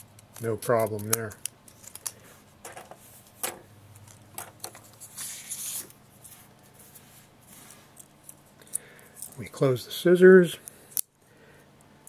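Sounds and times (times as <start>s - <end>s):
paper rustling: 4.5s - 8.0s.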